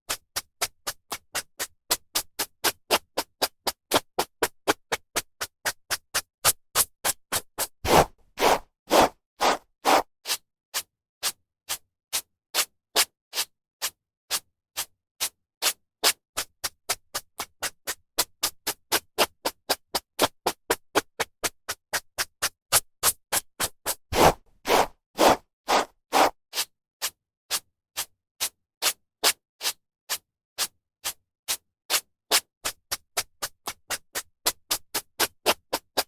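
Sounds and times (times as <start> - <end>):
hairbrush swishing through hair: 7.9 - 10.0, 24.1 - 26.3.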